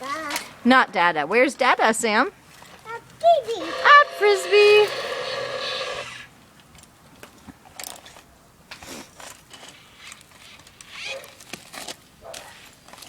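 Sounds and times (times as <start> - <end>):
toy digger scraping dirt: 3.4 - 6.3.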